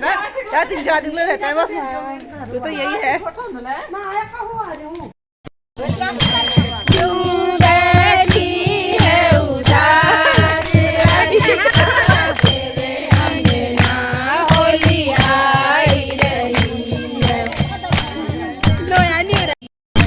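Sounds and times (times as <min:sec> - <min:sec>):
jingling tambourine: 0:05.8 - 0:19.6
drum beat: 0:05.8 - 0:20.0
person singing: 0:06.3 - 0:18.9.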